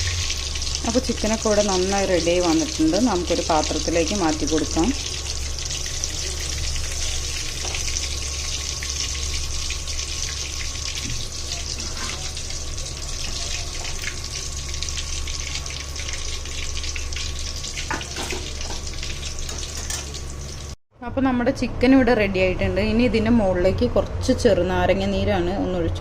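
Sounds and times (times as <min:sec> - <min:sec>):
chicken sizzling in hot oil: 0:00.0 - 0:20.8
oil crackling and popping: 0:00.0 - 0:20.8.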